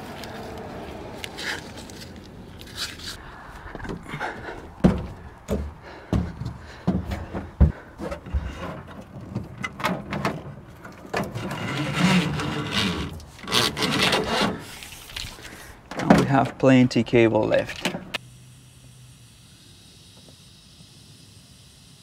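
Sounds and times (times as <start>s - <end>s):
cable scraping against edge: 10.9s - 15.7s.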